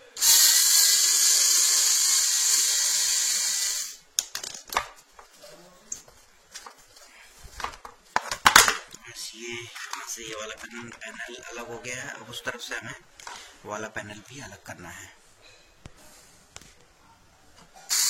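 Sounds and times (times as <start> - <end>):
loud steady hiss: 0.0 - 4.1.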